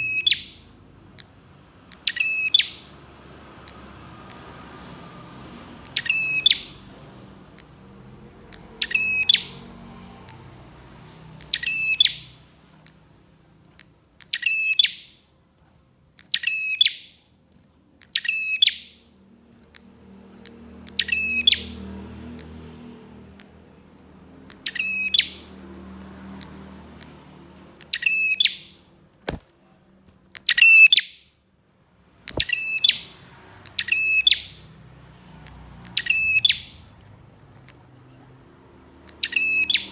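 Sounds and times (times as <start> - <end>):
sharp clicks: 7.3 - 9.4, 29.1 - 30.8, 32.2 - 33.0.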